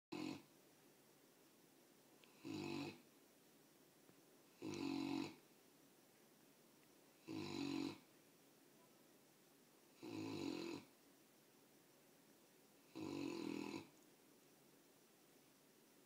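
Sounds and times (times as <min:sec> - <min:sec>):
puppy snoring: 0:00.1 - 0:00.5, 0:02.2 - 0:03.0, 0:04.5 - 0:05.4, 0:07.2 - 0:08.1, 0:09.9 - 0:10.9, 0:12.8 - 0:13.9.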